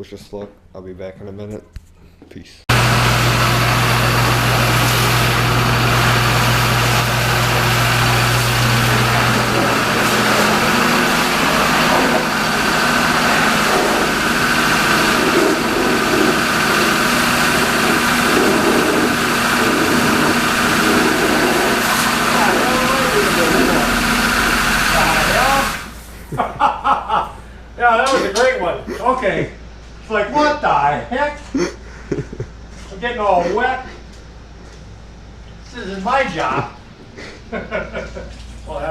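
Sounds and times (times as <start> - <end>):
hiss: 2.7 - 26.3
motor humming: 2.7 - 26.4.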